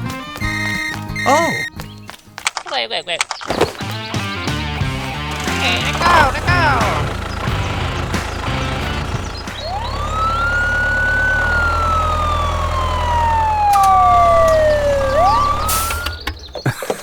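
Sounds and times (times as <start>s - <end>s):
siren rising and falling: 8.8s - 16.4s.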